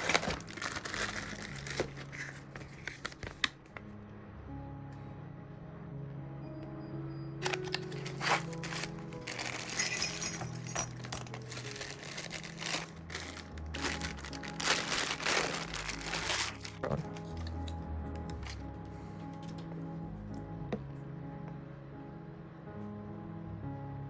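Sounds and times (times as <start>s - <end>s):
plastic packaging crinkling: 0.0s - 3.6s, 7.4s - 18.7s.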